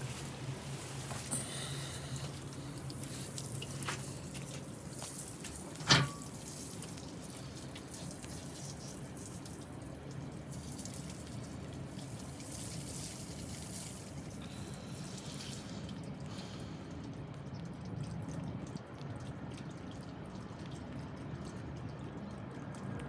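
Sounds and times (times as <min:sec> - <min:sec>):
water splashing against a door: 0:00.7 - 0:07.1.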